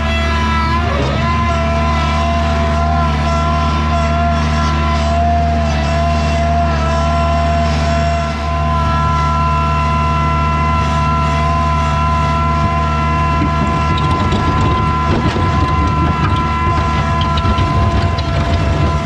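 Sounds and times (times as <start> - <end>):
skid steer engine with whine: 0.0 - 19.0.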